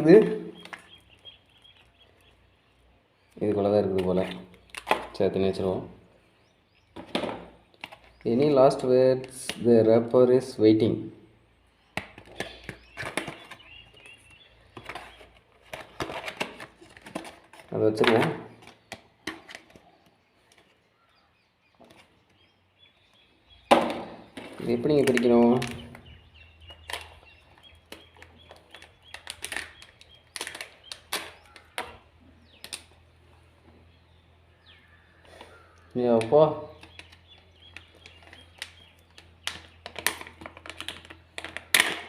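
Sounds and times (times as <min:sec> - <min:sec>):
packaging crackling and clicking: 0:24.4 - 0:32.0, 0:36.8 - 0:42.0.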